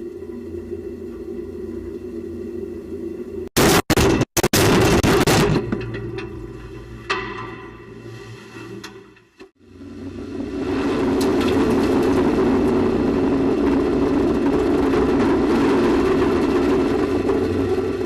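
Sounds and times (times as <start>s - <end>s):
loud rushing roar: 9.6s - 18.0s.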